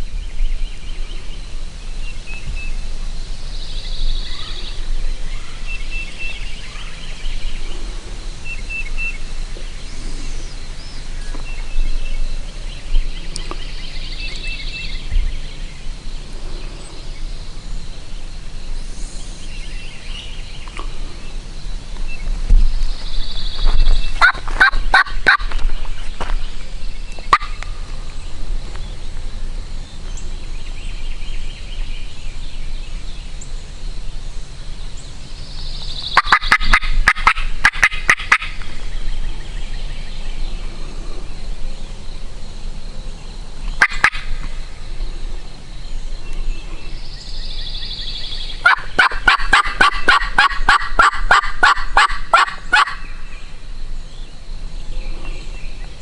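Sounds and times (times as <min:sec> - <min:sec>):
turkey call yelping: 0:24.2 - 0:25.5, 0:36.2 - 0:38.6, 0:48.6 - 0:53.0.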